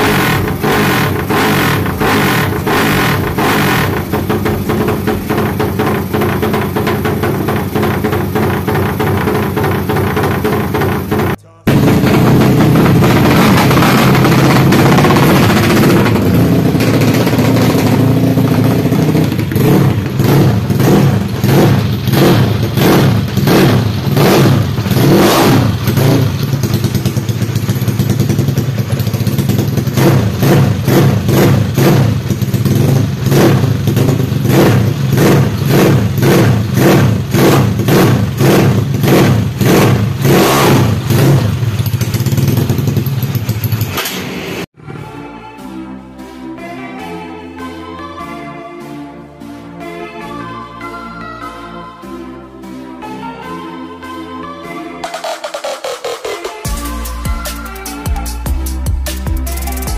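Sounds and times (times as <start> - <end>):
motorcycle engine revving: 0.0 - 45.1.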